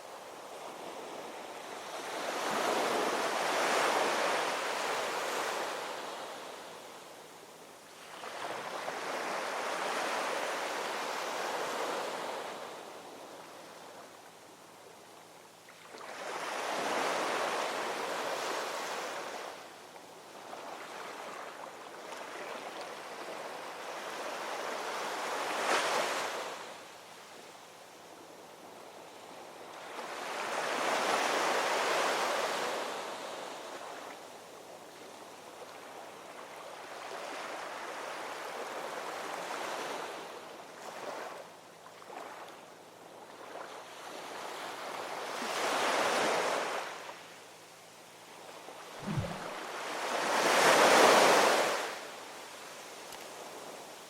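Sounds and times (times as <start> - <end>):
waves washing in: 48.9 - 52.0.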